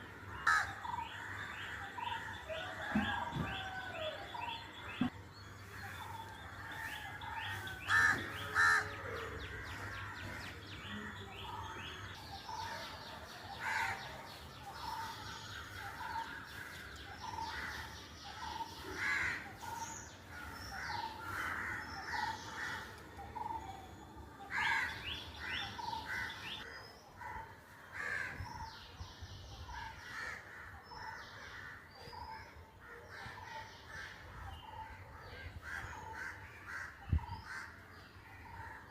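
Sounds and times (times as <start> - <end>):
birds chirping: 0.0 - 38.9
crows cawing: 0.4 - 3.0, 6.6 - 10.6, 13.6 - 14.2, 14.8 - 23.0, 24.5 - 26.6, 27.3 - 28.5, 30.1 - 31.8, 35.4 - 38.9.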